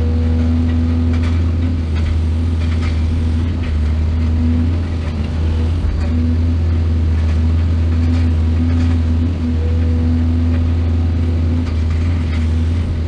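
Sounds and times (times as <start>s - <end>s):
excavator engine droning: 0.0s - 13.0s.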